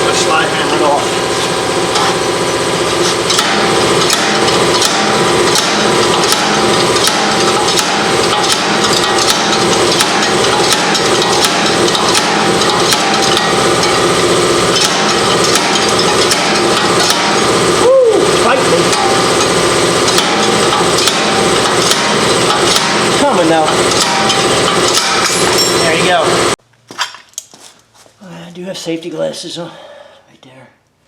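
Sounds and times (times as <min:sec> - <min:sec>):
steady machine noise: 0:00.0 - 0:26.6
slide hammer metallic blows: 0:02.9 - 0:26.6.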